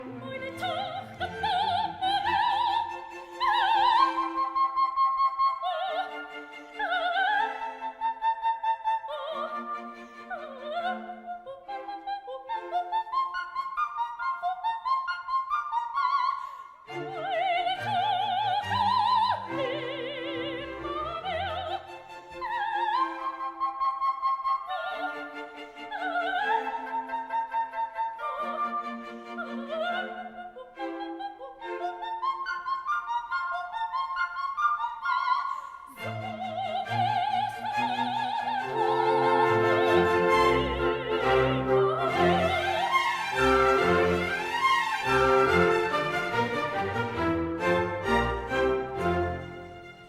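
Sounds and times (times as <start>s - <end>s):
operatic singing: 0.0s - 15.0s, 15.8s - 50.0s
classical background music: 0.0s - 50.0s
orchestral accompaniment: 36.0s - 50.0s.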